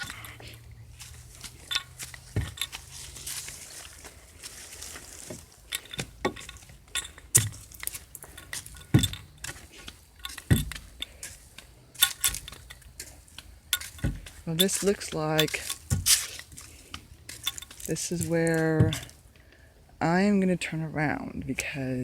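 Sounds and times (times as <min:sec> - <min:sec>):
crunching and scuffing steps: 0:00.0 - 0:19.3.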